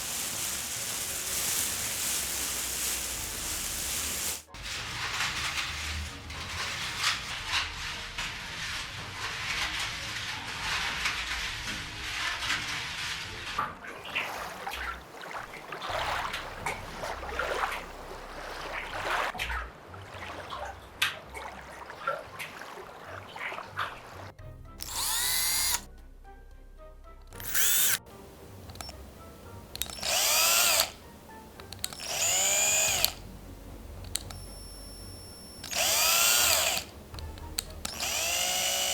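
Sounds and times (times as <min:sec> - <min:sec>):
scraping and rustling: 0:00.0 - 0:13.8
small electric motor whirring: 0:24.8 - 0:25.9, 0:27.4 - 0:29.1, 0:29.7 - 0:31.0, 0:31.6 - 0:33.2, 0:34.1 - 0:38.9.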